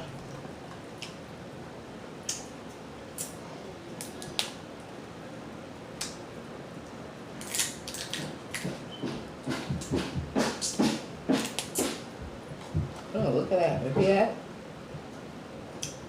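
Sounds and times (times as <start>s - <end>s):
crab shells cracking: 7.4s - 8.2s.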